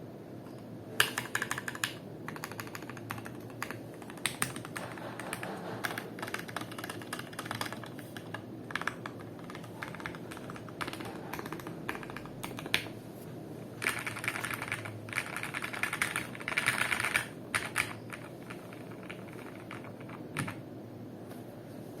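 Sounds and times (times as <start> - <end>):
mechanical keyboard typing: 1.0 - 12.9, 13.8 - 20.6.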